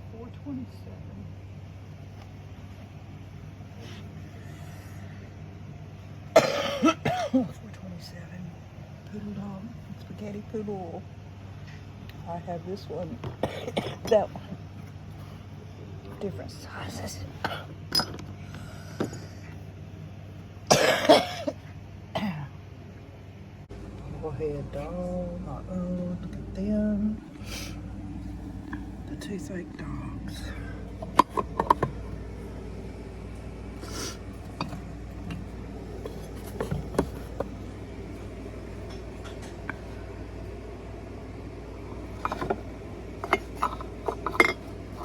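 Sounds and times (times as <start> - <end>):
steady low hum: 0.0 - 45.0
person coughing: 6.3 - 7.5, 13.4 - 14.2, 20.7 - 22.5.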